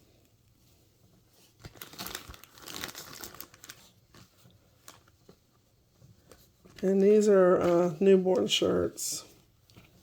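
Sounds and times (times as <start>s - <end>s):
packaging crinkling and rustling: 1.0s - 8.8s.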